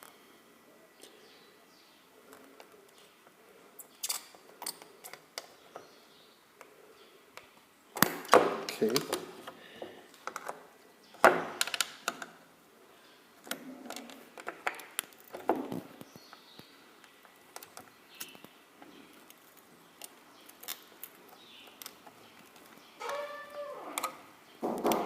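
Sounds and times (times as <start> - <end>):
small metal tools clicking: 4.0 - 5.5.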